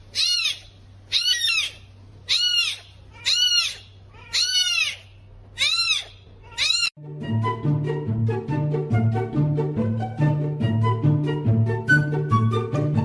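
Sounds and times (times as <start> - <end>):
animal crying out: 0.0 - 7.0
music: 7.0 - 13.0.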